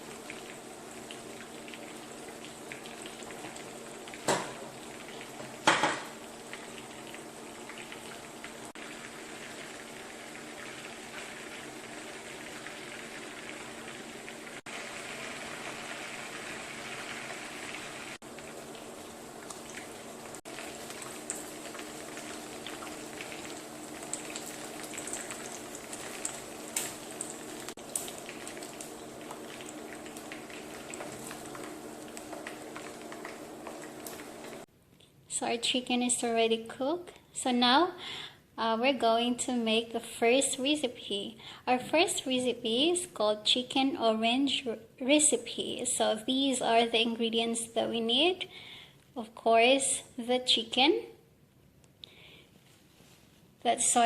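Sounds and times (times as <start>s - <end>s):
chicken deep-frying in oil: 0.0s - 34.7s
oil popping and crackling: 0.0s - 34.7s.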